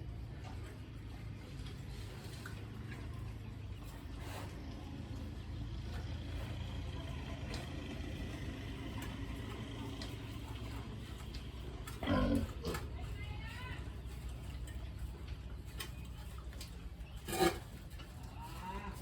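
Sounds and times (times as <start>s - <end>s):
engine humming: 0.0s - 19.0s.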